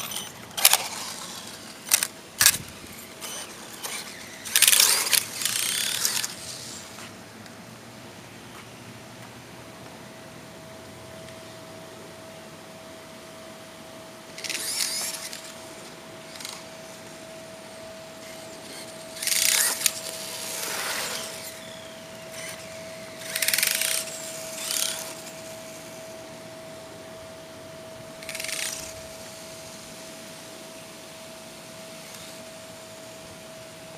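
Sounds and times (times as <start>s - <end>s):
rc truck motor whirring: 0.0s - 7.1s, 14.3s - 17.2s, 18.1s - 26.3s, 28.2s - 30.0s, 31.9s - 33.2s
faint steady tone: 15.2s - 33.9s.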